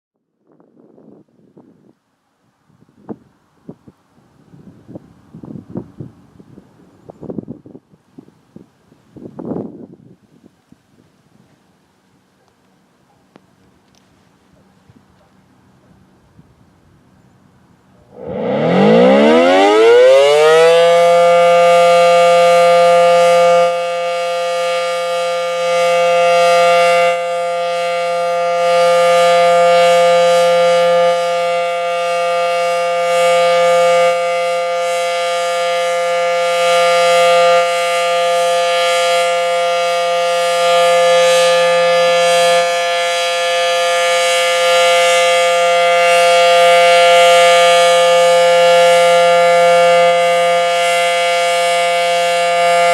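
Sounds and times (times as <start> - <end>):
warning siren winding up: 18.1 - 52.9.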